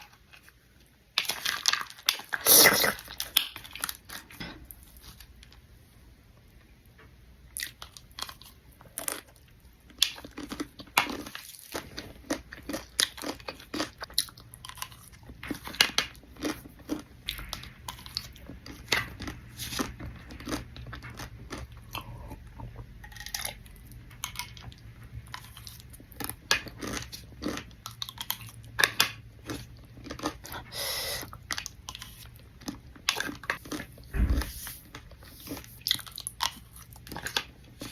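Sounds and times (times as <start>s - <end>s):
crunching and chewing snack: 0.0s - 5.6s, 7.5s - 34.2s, 34.8s - 37.9s.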